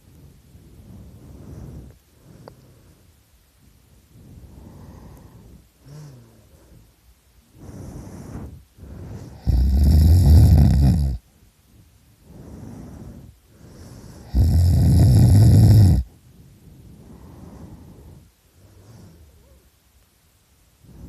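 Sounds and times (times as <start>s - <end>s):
quiet breathing: 0.0s - 21.0s
man snoring loudly: 9.3s - 11.2s, 14.2s - 16.1s.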